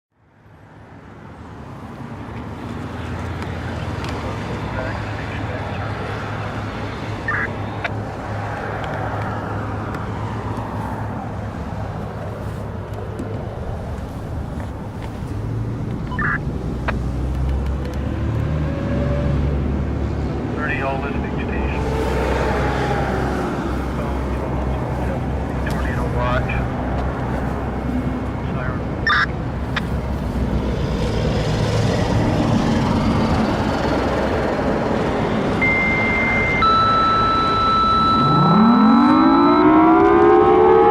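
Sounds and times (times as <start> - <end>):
road traffic rumble: 0.1 - 40.9
vehicle passing by: 0.6 - 40.9
steady high radio tone: 4.7 - 6.6, 7.2 - 8.0, 25.6 - 26.6, 29.1 - 29.9, 35.6 - 40.9
short beep: 7.3 - 7.5, 16.1 - 16.4, 29.1 - 29.3, 35.6 - 39.7
low hum: 35.5 - 40.9.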